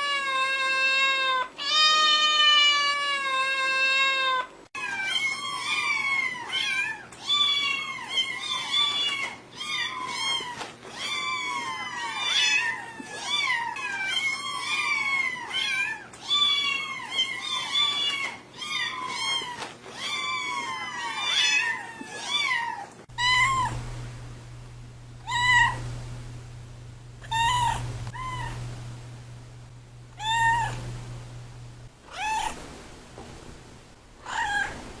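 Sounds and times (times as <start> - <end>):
cats meowing: 0.0 - 23.8, 25.2 - 25.9, 27.2 - 28.6, 30.2 - 30.9, 32.0 - 32.6, 34.2 - 34.8
low steady hum: 23.0 - 35.0.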